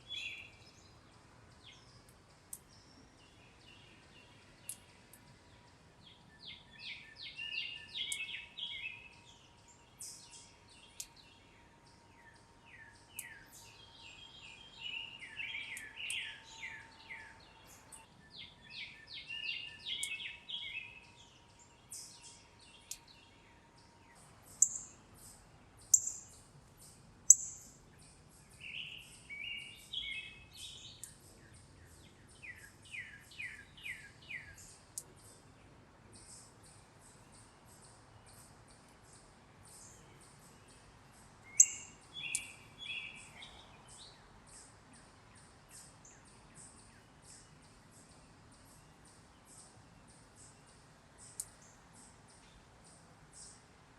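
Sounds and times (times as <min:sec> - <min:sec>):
songbirds whistling: 0:06.4 - 0:09.1, 0:12.2 - 0:23.1, 0:27.3 - 0:27.8, 0:28.5 - 0:35.1, 0:41.5 - 0:44.7
sharp high bird chips: 0:27.3 - 0:27.7.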